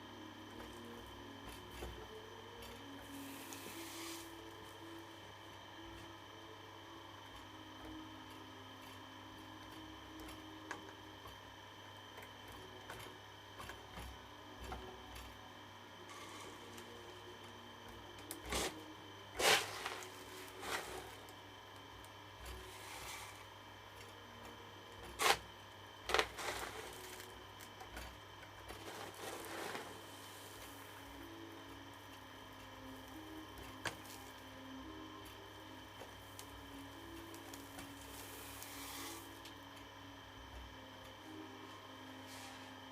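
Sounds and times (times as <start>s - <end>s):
steady hum: 0.0s - 42.9s
small motor whirring: 16.0s - 17.2s.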